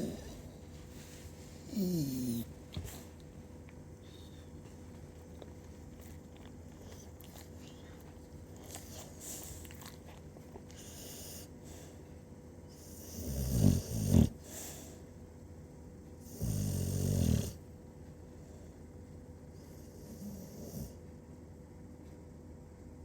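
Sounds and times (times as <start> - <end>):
faint breathing: 4.0 - 4.8
loud snore: 13.0 - 14.4, 16.4 - 17.6.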